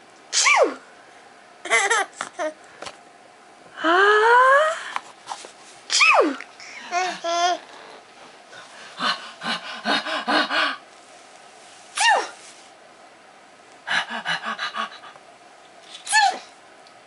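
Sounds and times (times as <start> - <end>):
adult sneezing: 0.3 - 0.8, 5.9 - 6.4, 12.0 - 12.4, 16.0 - 16.5
baby giggling: 1.6 - 2.6, 6.7 - 8.0.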